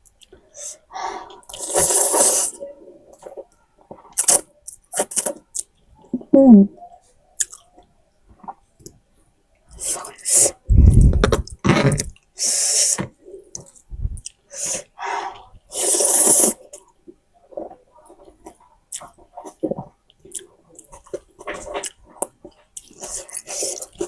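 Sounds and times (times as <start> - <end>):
noodle slurping: 1.5 - 2.6, 15.7 - 16.6.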